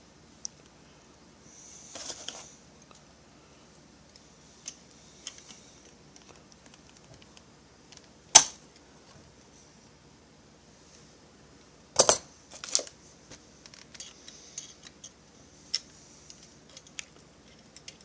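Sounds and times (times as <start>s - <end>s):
metal parts and pliers clicking: 13.7s - 18.0s.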